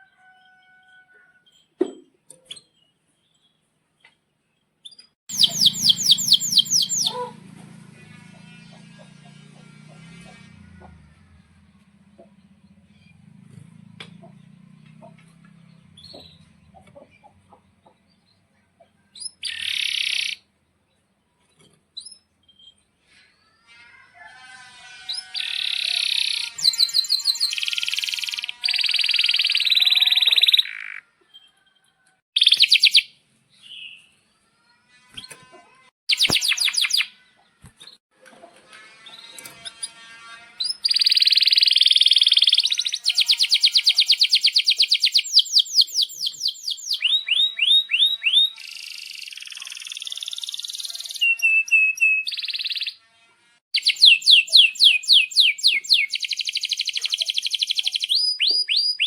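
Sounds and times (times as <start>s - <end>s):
canary singing trills: 4.9s - 7.4s, 19.2s - 20.5s, 25.2s - 31.0s, 32.4s - 33.1s, 36.1s - 37.2s, 40.6s - 53.0s, 53.8s - 59.0s.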